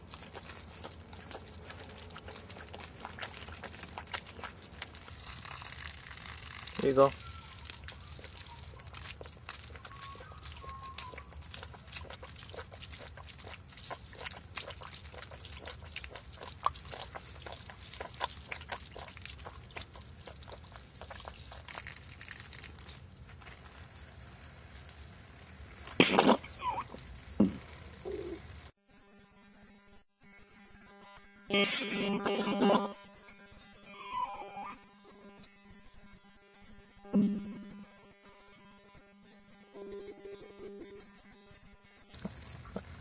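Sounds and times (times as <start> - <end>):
koala drinking water: 0.0 - 28.7, 39.8 - 41.4, 42.1 - 43.0
animal sneeze: 26.0 - 27.0.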